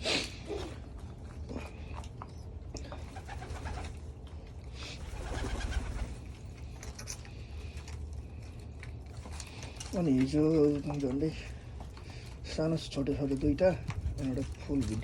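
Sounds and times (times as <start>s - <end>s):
pigeons cooing: 0.0s - 4.2s, 4.8s - 6.3s.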